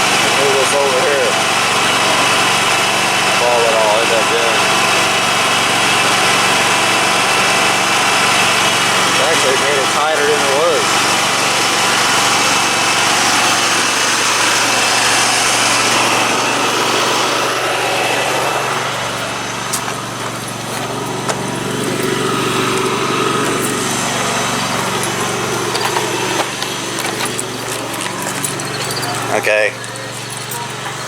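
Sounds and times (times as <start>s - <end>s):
riding mower engine running: 0.0s - 31.0s.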